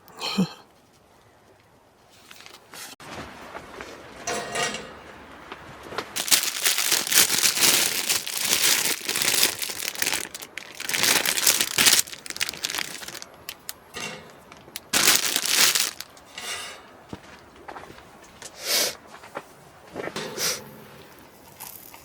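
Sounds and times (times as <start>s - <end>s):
packaging crinkling: 2.3s - 2.6s, 6.2s - 13.8s, 14.6s - 16.1s.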